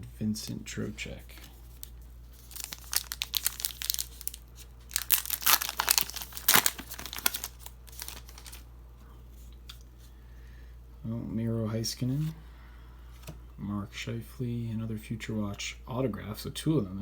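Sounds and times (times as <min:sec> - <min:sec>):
card pack wrapper crinkling: 0:01.7 - 0:08.6.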